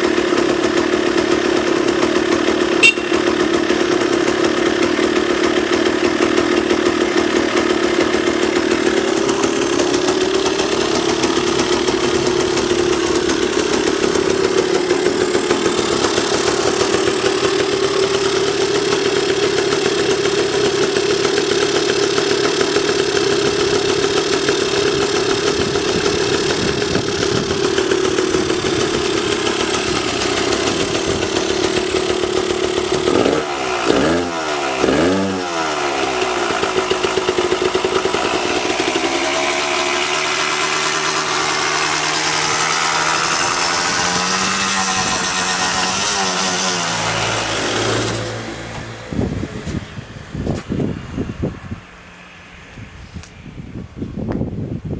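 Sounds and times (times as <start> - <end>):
two-stroke engine idling: 0.0 - 50.3
throttle blips: 2.8 - 3.3.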